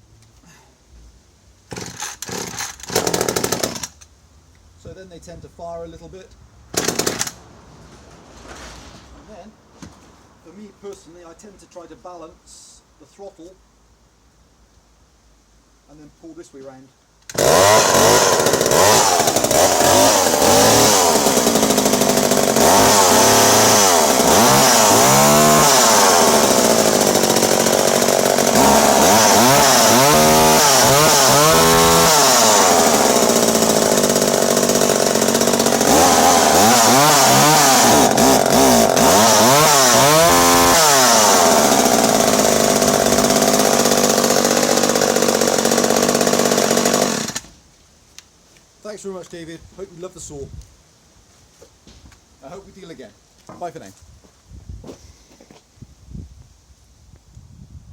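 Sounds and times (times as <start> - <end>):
chainsaw engine revving: 1.7 - 4.0, 6.8 - 7.4, 17.3 - 47.5.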